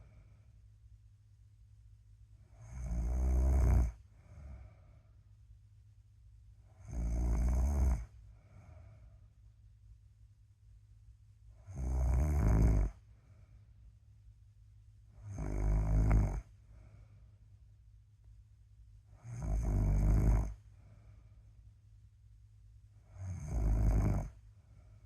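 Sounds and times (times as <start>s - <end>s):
quiet breathing: 0.0s - 1.1s, 2.2s - 10.2s, 11.3s - 25.0s
person snoring: 2.5s - 4.7s, 6.8s - 8.9s, 11.6s - 13.0s, 15.2s - 16.5s, 19.2s - 20.6s, 23.1s - 24.4s.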